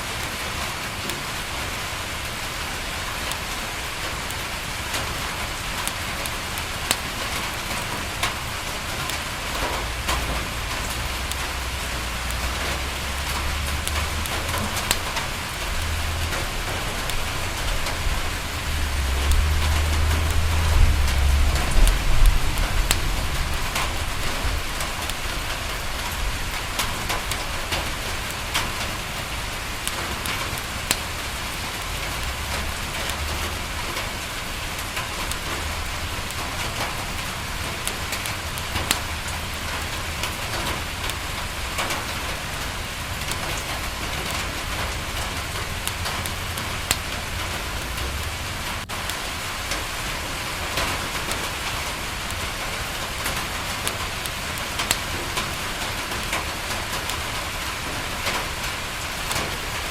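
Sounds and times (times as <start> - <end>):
rain pattering on a window: 0.0 - 59.9
wood fire crackling and popping: 0.0 - 59.9
low rumble: 10.5 - 26.4.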